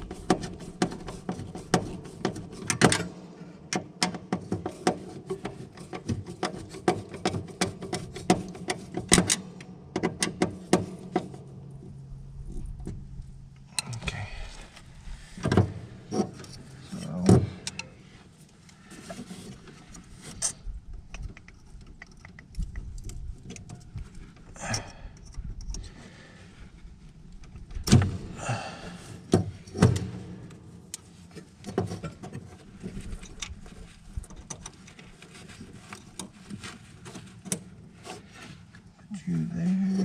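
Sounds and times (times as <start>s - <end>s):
rustling scrapes: 14.4s - 20.7s, 29.0s - 40.0s
tools clicking and rattling: 15.4s - 18.0s, 19.9s - 25.9s.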